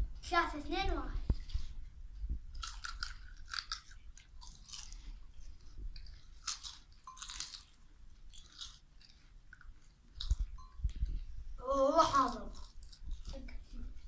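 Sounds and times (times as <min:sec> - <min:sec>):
potato chips crunching: 0:02.6 - 0:05.1, 0:06.0 - 0:09.6, 0:12.2 - 0:13.5.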